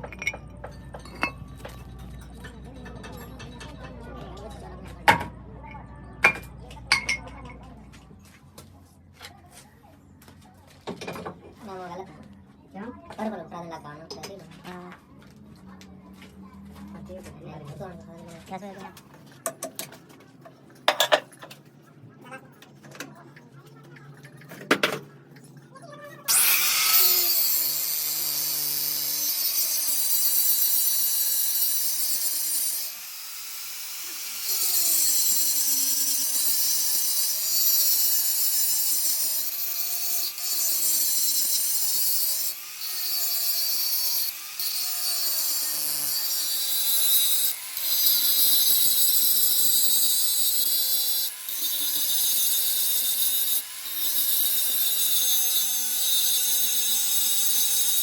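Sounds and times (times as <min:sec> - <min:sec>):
power tool running under load: 0:26.3 - 0:58.0.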